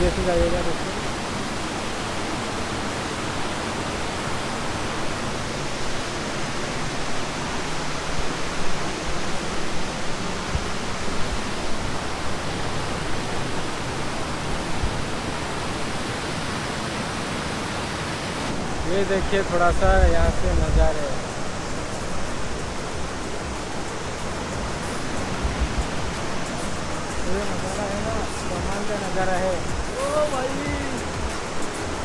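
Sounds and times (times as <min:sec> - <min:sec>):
waterfall rushing: 0:00.0 - 0:32.0.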